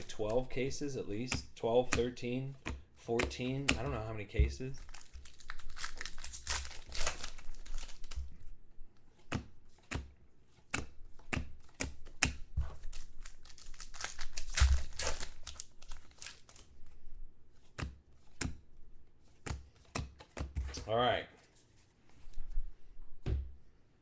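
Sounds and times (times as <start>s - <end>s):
cards clicking and tapping: 0.0s - 8.3s, 9.1s - 16.6s, 17.6s - 18.7s, 19.3s - 20.8s
wrapper tearing and crinkling: 4.8s - 8.4s, 12.8s - 16.7s.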